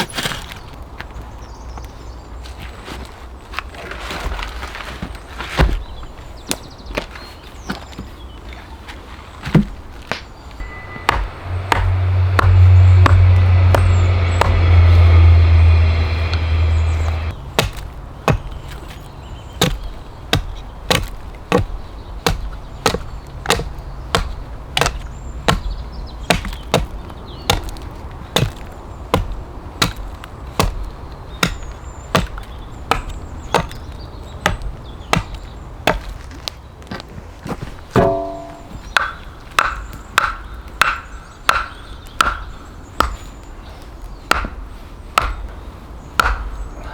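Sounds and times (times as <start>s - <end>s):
loud low rumble: 10.6s - 17.4s, 38.0s - 38.8s
axe chopping wood: 17.2s - 19.0s, 19.6s - 36.3s, 38.0s - 43.2s, 44.2s - 44.6s, 45.2s - 45.5s, 46.2s - 46.6s.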